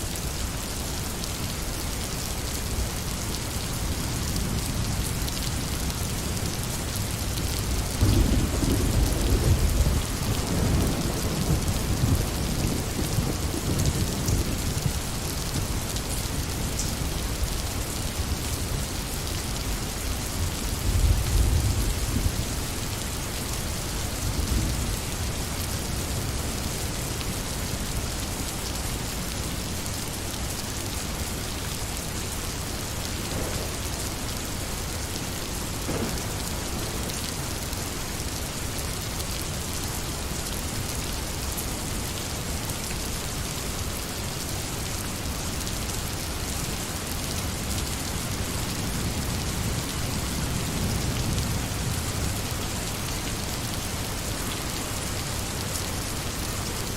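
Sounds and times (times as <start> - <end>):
rain falling: 0.0 - 56.9
thunder rumbling: 7.8 - 15.8, 33.1 - 34.4, 35.6 - 37.5.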